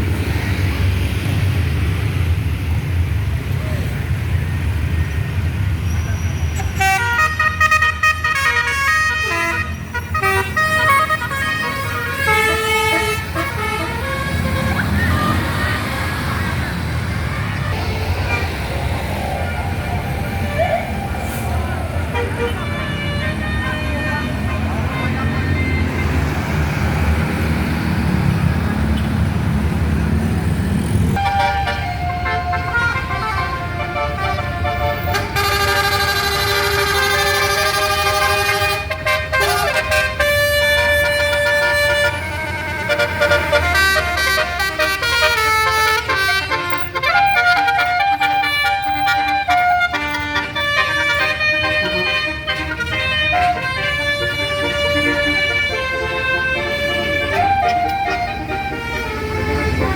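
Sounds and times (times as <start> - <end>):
bus engine rumble: 0.0 - 59.9
musical bus horn: 6.6 - 18.4, 20.2 - 26.6, 31.0 - 59.9.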